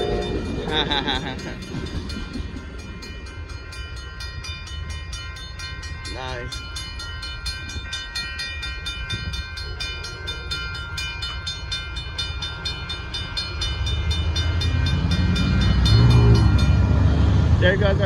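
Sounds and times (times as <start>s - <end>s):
crossing warning bell ringing: 0.0s - 18.0s
passenger train rumbling past: 0.0s - 18.0s.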